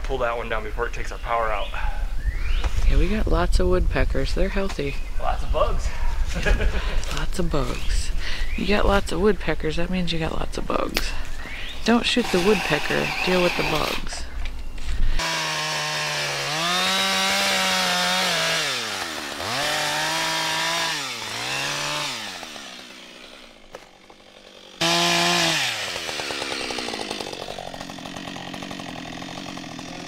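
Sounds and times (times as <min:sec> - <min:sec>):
chainsaw engine revving: 0:12.0 - 0:14.2, 0:15.2 - 0:30.0.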